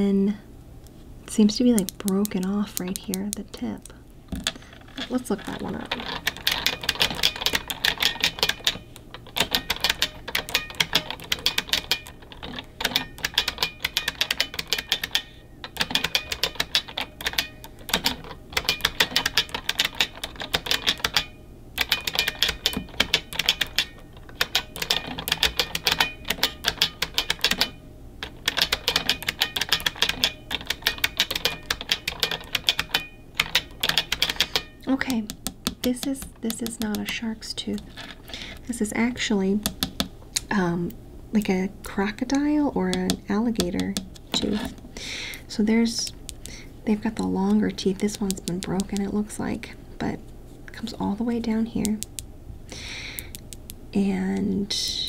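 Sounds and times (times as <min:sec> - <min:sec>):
mechanical keyboard typing: 0:01.6 - 0:03.9, 0:05.0 - 0:38.7, 0:42.2 - 0:44.8, 0:46.4 - 0:49.2.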